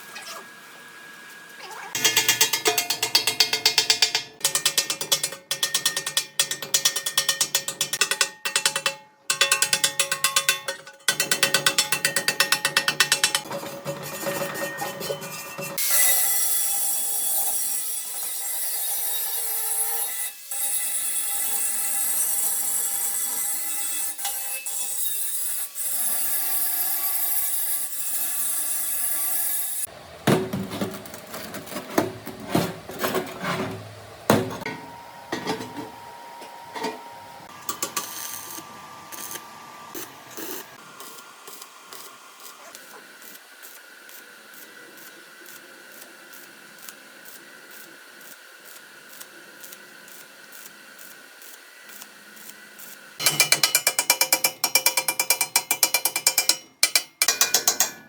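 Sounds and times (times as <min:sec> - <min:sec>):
power tool grinding: 0:01.8 - 0:16.7
sharp knocks and clatter: 0:02.0 - 0:15.8, 0:53.2 - 0:58.0.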